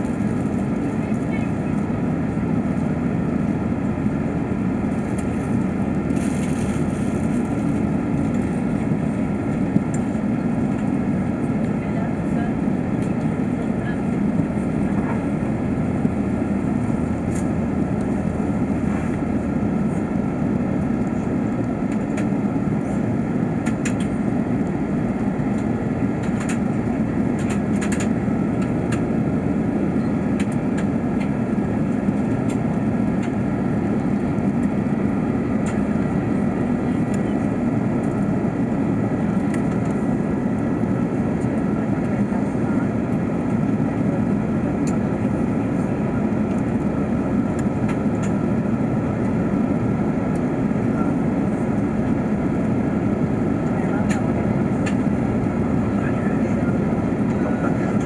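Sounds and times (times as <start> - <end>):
airplane cabin airflow and drone: 0.0 - 58.0.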